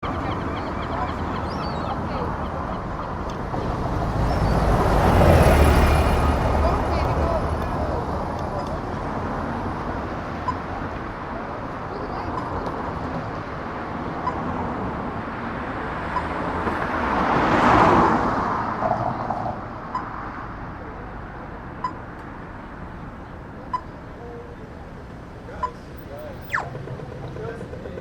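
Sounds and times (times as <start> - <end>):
vehicle passing by: 0.0 - 9.8, 14.9 - 21.2
traffic hum: 0.0 - 28.0.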